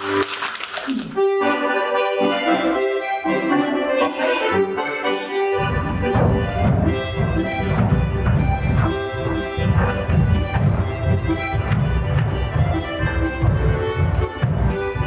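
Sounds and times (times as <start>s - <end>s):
accordion folk dance melody: 0.0s - 15.0s
low heavy accompaniment: 0.9s - 15.0s.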